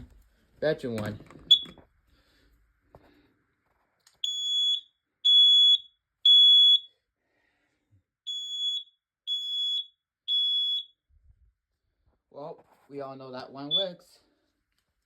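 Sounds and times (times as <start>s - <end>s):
smoke alarm beeping: 1.5s - 1.8s, 4.2s - 7.0s, 8.2s - 11.1s, 13.6s - 14.0s.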